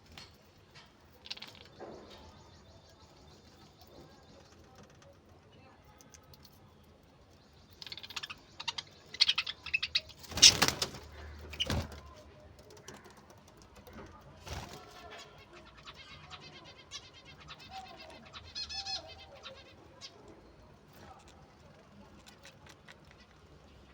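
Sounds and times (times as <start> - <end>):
budgerigars chirping: 7.6 - 11.9.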